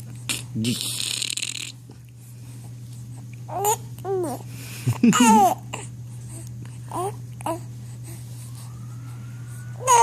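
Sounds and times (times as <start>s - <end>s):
low hum: 1.9s - 10.0s
baby cooing: 9.8s - 10.0s.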